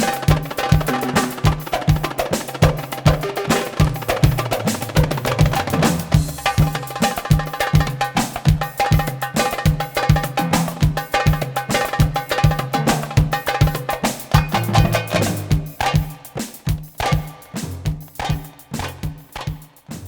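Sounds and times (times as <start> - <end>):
goblet drum solo: 0.0 - 20.0.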